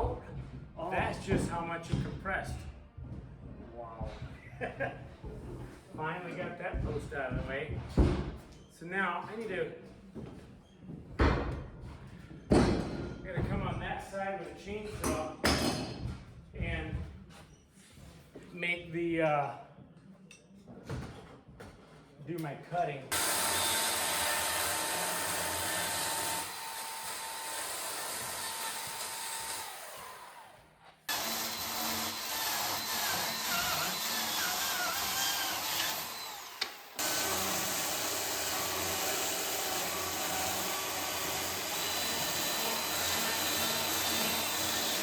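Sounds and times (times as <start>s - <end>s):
chainsaw cutting wood: 23.1s - 45.0s.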